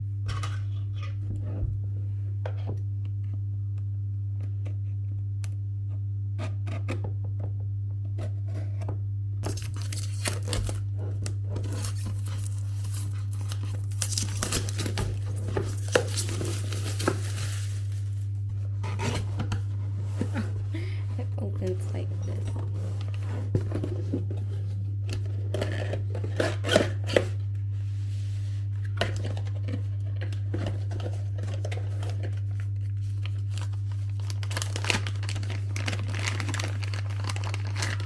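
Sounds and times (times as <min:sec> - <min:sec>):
low electrical hum: 0:00.0 - 0:38.0
packaging being torn and crinkled: 0:09.4 - 0:18.4, 0:31.3 - 0:38.0.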